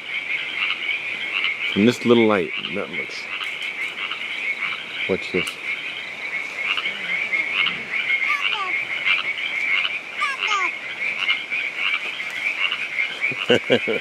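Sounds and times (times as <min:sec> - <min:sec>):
chorus of frogs calling: 0:00.0 - 0:14.0
short falling frog calls: 0:03.3 - 0:13.5.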